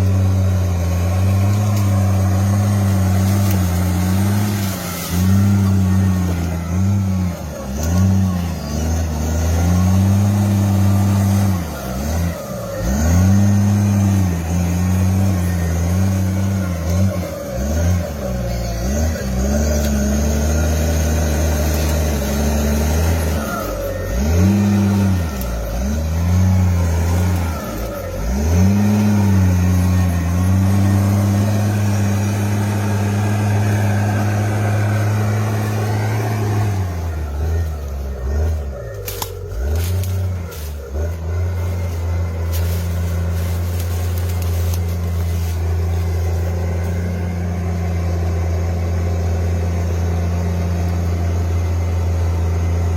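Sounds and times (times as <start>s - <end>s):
bulldozer diesel engine working: 0.0s - 52.9s.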